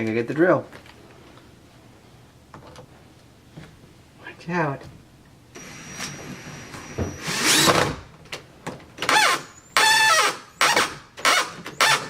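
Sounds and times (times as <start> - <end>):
power drill driving screws: 5.6 - 8.0, 9.0 - 12.0.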